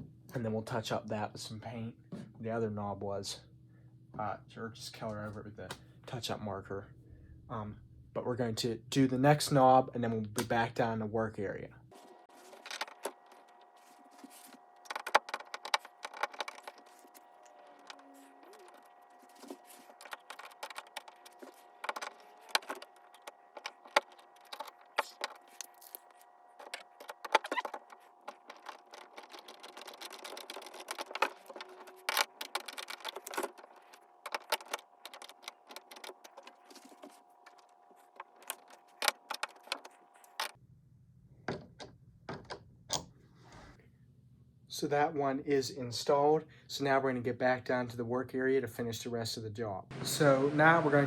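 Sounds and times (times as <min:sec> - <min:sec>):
metal fittings clicking and rattling: 0:19.8 - 0:40.6.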